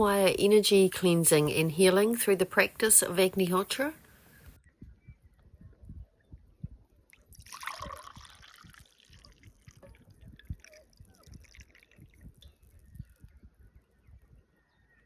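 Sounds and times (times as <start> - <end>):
water splashing: 7.4 - 9.7.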